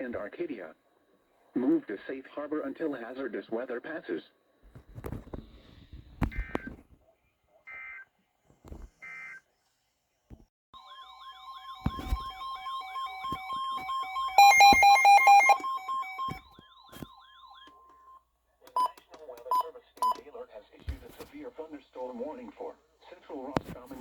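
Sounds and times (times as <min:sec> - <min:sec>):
warbling siren wail: 0:11.0 - 0:16.4
steady alert tone: 0:11.2 - 0:16.4
loud rapid beeping: 0:12.3 - 0:16.4.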